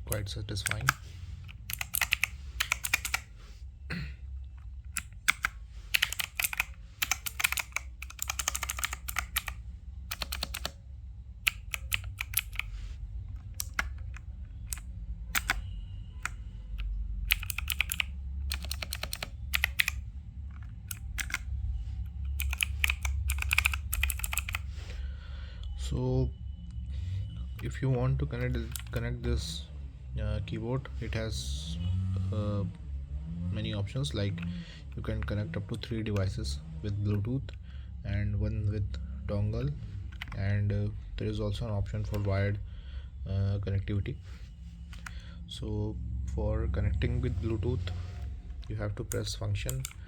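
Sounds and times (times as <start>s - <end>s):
mechanical keyboard typing clicks: 0.0s - 3.3s, 4.9s - 10.8s, 11.5s - 12.7s, 13.4s - 20.0s, 20.9s - 21.5s, 22.3s - 24.7s, 28.4s - 29.1s, 49.1s - 50.0s.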